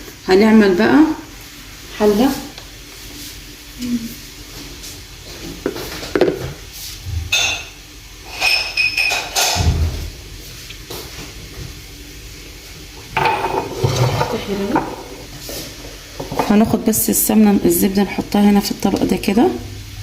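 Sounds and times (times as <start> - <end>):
metal pots and utensils clinking: 7.3 - 9.7, 13.2 - 15.1.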